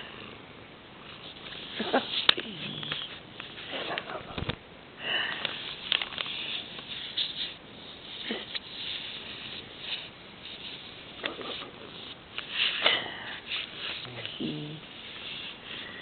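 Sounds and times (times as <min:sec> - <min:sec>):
man snoring: 0:14.0 - 0:14.8.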